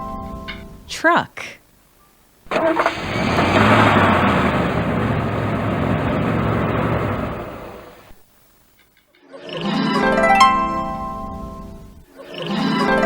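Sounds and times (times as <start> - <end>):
truck engine running: 2.5 - 8.2.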